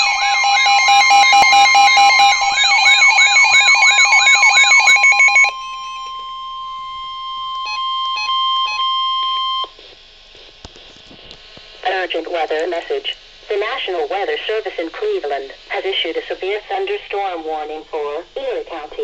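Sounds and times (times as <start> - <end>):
falling electronic wail: 0.0 - 6.3
warbling beeps: 0.0 - 6.4.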